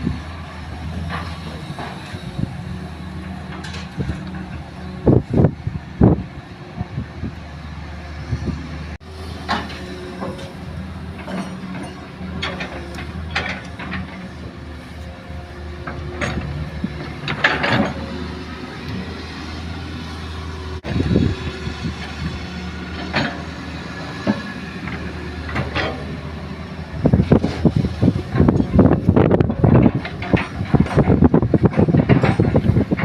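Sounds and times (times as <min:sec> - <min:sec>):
excavator diesel engine running: 0:00.0 - 0:33.0
metallic clanks and scrapes: 0:03.5 - 0:04.6, 0:09.4 - 0:15.1, 0:15.8 - 0:18.2, 0:22.9 - 0:26.2, 0:27.2 - 0:33.0.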